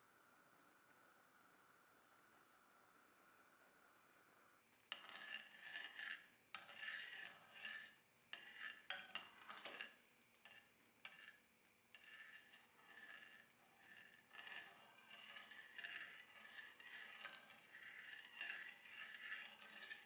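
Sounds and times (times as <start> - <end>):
metal spoon scraping cookware: 4.9 - 20.0.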